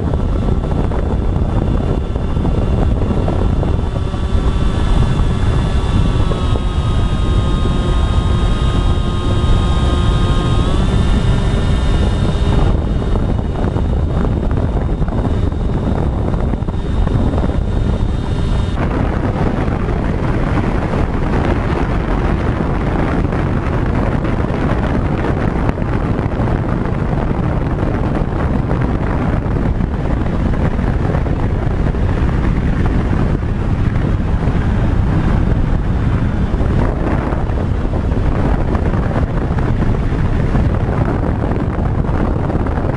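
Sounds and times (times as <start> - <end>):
wind buffeting microphone: 0.0 - 42.9
electric motors whining: 0.1 - 23.2.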